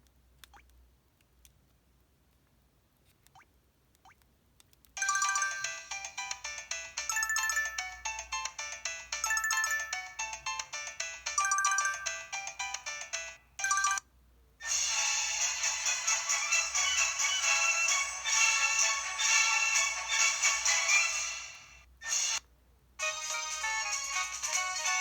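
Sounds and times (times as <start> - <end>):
phone ringtone melody: 5.0 - 14.0.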